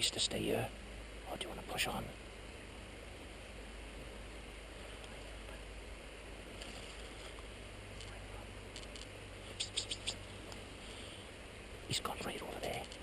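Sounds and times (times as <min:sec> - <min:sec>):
faint outdoor hiss: 0:00.0 - 0:13.0
sharp clicks: 0:08.0 - 0:10.6, 0:12.6 - 0:13.0.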